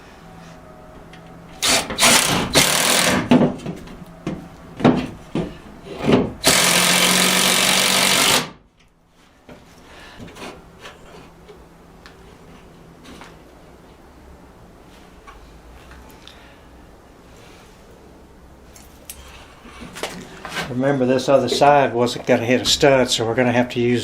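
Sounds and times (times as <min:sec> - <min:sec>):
power drill boring: 0:01.6 - 0:03.3, 0:06.4 - 0:08.5.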